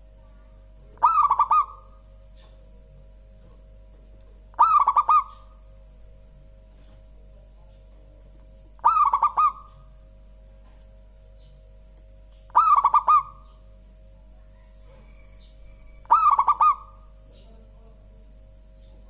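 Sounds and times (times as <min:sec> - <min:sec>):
dove cooing: 0:01.0 - 0:02.6, 0:04.5 - 0:05.7, 0:08.8 - 0:10.0, 0:12.5 - 0:13.6, 0:14.4 - 0:18.0.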